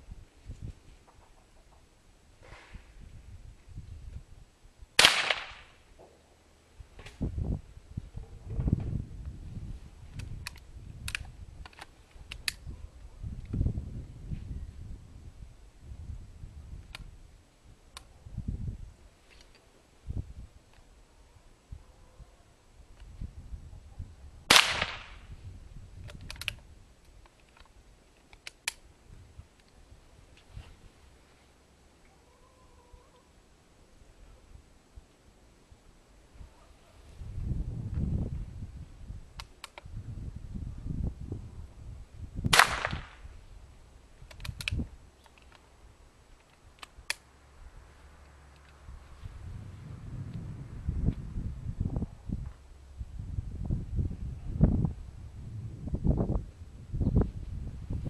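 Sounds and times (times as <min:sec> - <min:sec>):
rifle shot: 0:05.0 - 0:05.8, 0:24.5 - 0:25.2, 0:42.5 - 0:43.2
rifle action clicks: 0:10.1 - 0:12.6, 0:26.0 - 0:28.8, 0:39.4 - 0:39.9, 0:44.3 - 0:45.6, 0:46.4 - 0:47.2.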